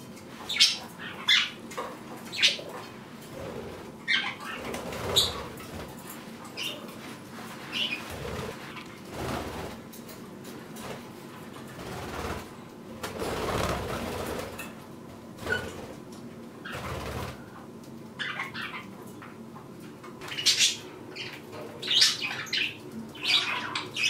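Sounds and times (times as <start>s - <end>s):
budgies chirping: 0.5s - 1.6s, 2.3s - 2.8s, 3.4s - 5.6s, 7.7s - 8.8s, 18.2s - 18.9s, 20.2s - 24.0s
wings flapping: 3.3s - 6.0s, 7.7s - 9.9s, 10.7s - 14.8s, 15.4s - 17.6s.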